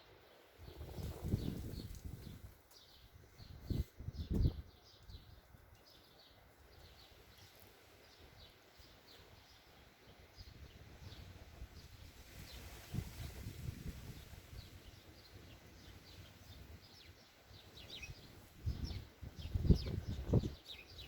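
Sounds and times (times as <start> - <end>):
small birds chirping: 0.0 - 21.0
wind buffeting microphone: 0.6 - 5.7, 10.4 - 15.0, 17.8 - 21.0.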